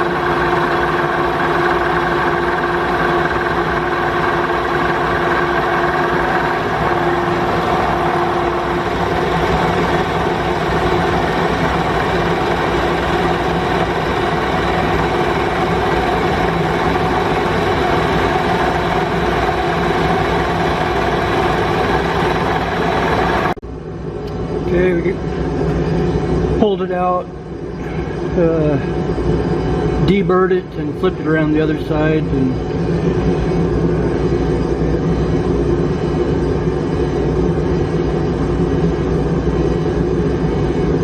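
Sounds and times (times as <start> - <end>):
milling machine cutting steel: 0.0 - 23.6.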